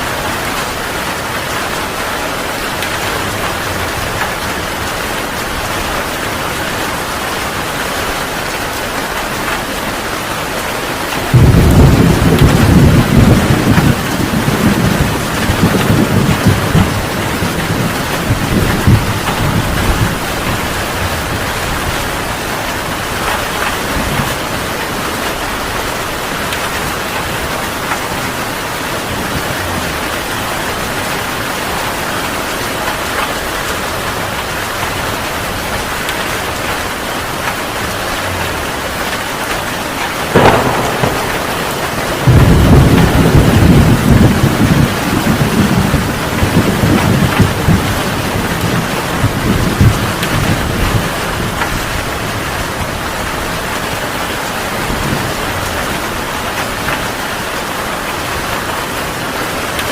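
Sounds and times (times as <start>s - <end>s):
thunder rumbling: 0.0s - 53.9s
heavy rain falling: 0.0s - 59.9s
sharp thunderclap: 11.2s - 22.0s, 40.2s - 51.7s.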